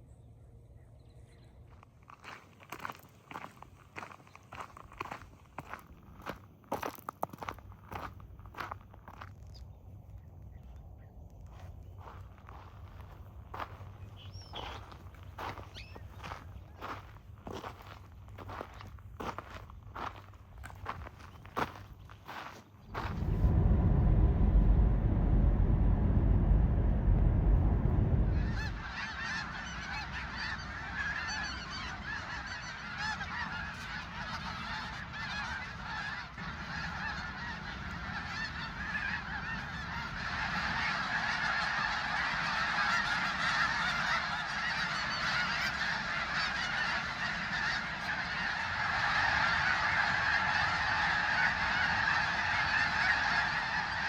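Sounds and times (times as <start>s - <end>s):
low rumble: 22.9s - 31.1s
geese honking: 28.2s - 54.0s.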